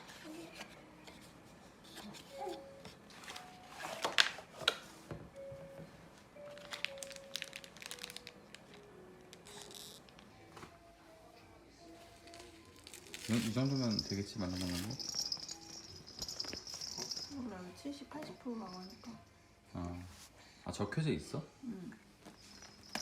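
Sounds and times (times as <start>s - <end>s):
clicks and crinkling handling noise: 6.5s - 10.8s.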